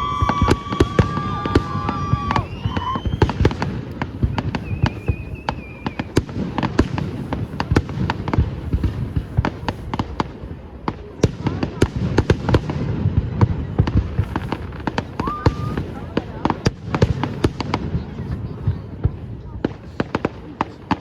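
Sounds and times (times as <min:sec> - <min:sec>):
whistling shells: 0:00.0 - 0:03.4, 0:04.2 - 0:06.1
fireworks bangs and crackles: 0:00.0 - 0:21.0.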